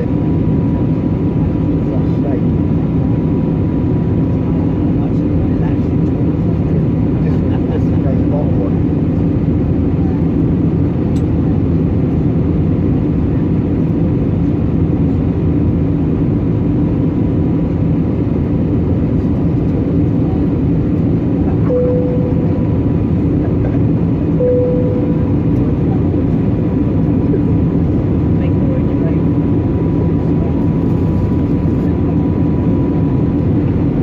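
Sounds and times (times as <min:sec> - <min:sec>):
airplane cabin engine rush: 0:00.0 - 0:34.0
short tones: 0:21.7 - 0:22.8, 0:24.4 - 0:25.5
faint steady hum: 0:21.7 - 0:26.5.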